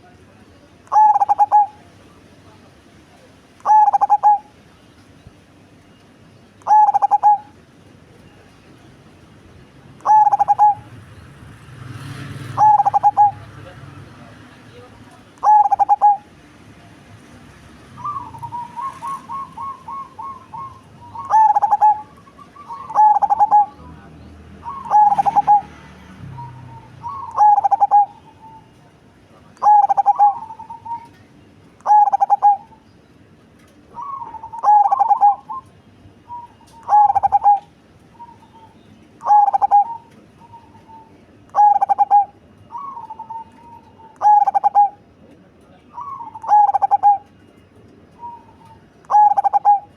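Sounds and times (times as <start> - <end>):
dove cooing: 0.9 - 1.9, 3.6 - 4.5, 6.6 - 7.6, 10.0 - 11.0, 12.5 - 13.5, 15.4 - 16.3, 18.0 - 28.9, 29.6 - 31.2, 31.8 - 32.8, 33.9 - 45.0, 45.9 - 47.4, 48.1 - 49.9.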